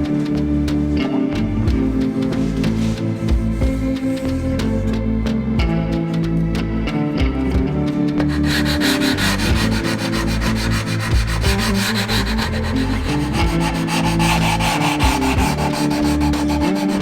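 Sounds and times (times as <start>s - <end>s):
wood sanded by hand: 8.2s - 17.0s.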